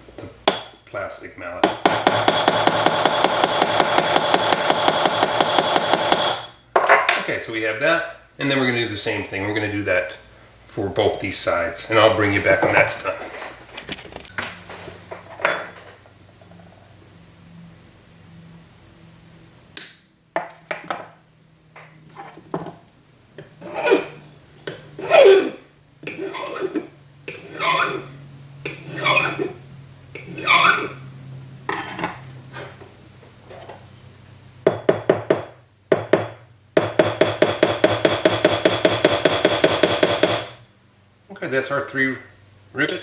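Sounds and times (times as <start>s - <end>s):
metal tools clattering and scraping: 15.3s - 16.0s, 26.1s - 28.0s, 31.7s - 32.8s
small hammer tapping metal: 34.7s - 40.7s.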